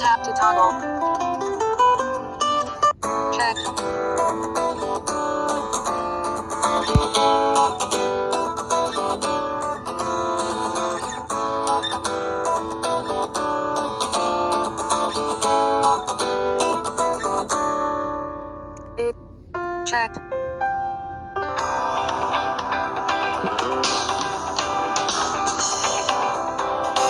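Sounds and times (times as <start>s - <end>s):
guitar ringtone: 0.0s - 19.2s, 21.4s - 27.0s
thump: 6.9s - 7.1s.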